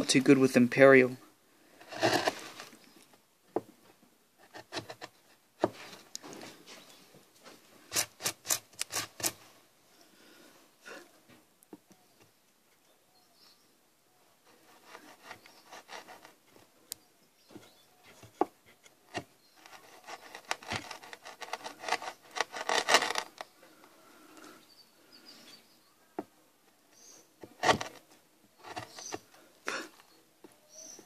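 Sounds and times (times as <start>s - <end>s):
chisel scraping wood: 1.8s - 2.8s, 4.4s - 6.3s, 7.8s - 9.4s, 14.5s - 16.7s, 17.4s - 23.5s, 27.0s - 30.1s.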